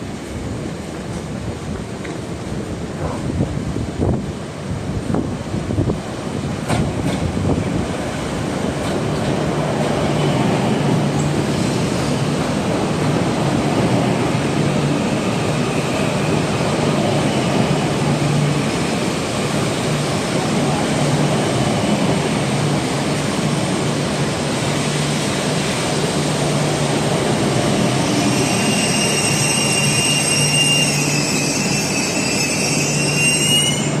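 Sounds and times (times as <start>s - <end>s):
train rumbling: 0.0s - 34.0s.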